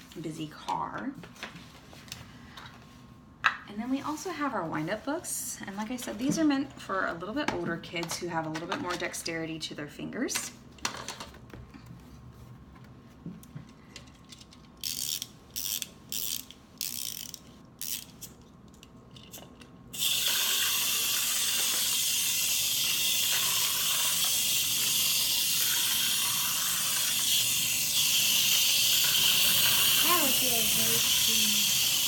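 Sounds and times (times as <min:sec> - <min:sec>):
clockwork spring motor whirring: 0:14.8 - 0:18.3, 0:19.9 - 0:32.0
wind-up key ratcheting: 0:14.8 - 0:18.3, 0:19.9 - 0:32.0.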